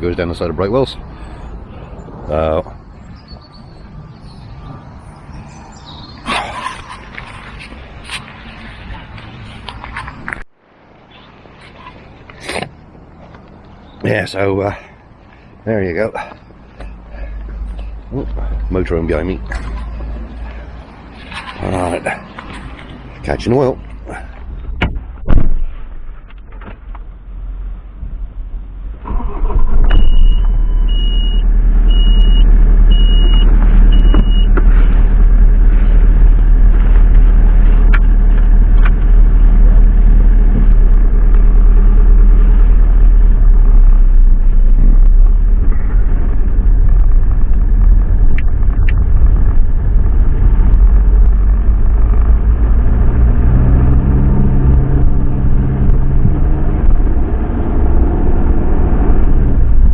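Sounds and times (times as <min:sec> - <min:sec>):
road rumble: 0:00.0 - 0:59.9
van engine running: 0:16.2 - 0:59.9.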